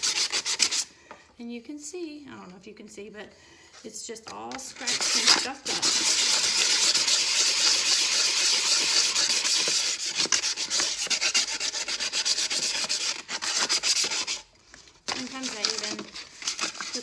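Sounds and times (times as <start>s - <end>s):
sandpaper rubbing on metal: 0.0s - 0.9s, 4.8s - 14.5s, 15.2s - 17.0s.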